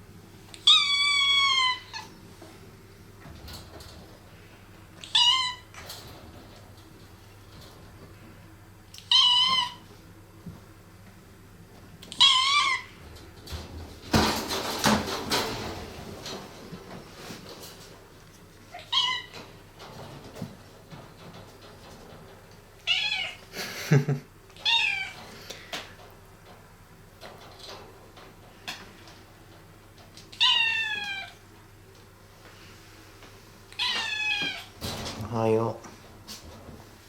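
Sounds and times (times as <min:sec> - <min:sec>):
cat meowing: 0:00.6 - 0:02.1, 0:05.0 - 0:05.7, 0:09.0 - 0:09.8, 0:12.1 - 0:12.9, 0:18.7 - 0:19.3, 0:22.8 - 0:23.4, 0:24.6 - 0:25.2, 0:30.3 - 0:31.4, 0:33.7 - 0:34.7.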